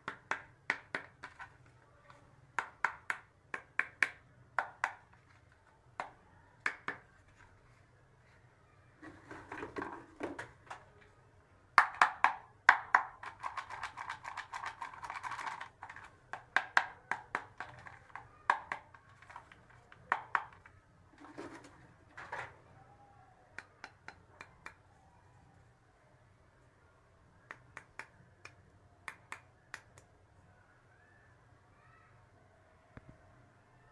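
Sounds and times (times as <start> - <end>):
plastic toy pieces clattering: 13.2 - 16.5.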